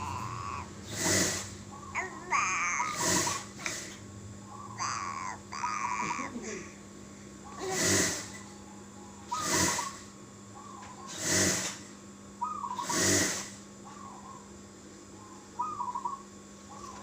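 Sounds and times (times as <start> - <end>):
dove cooing: 0.0 - 3.9, 4.5 - 6.7, 9.3 - 10.0, 12.4 - 14.5, 15.2 - 17.0
steady low hum: 0.0 - 17.0.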